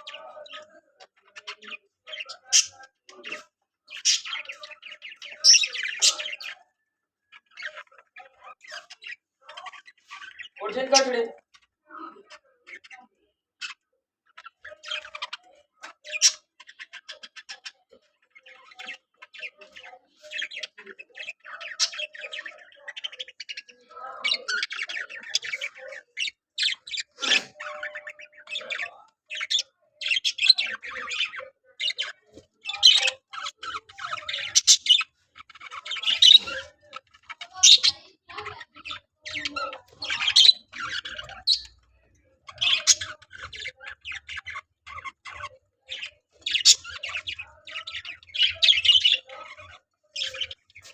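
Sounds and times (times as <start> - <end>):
budgerigars chirping and squawking: 0.0 - 50.9.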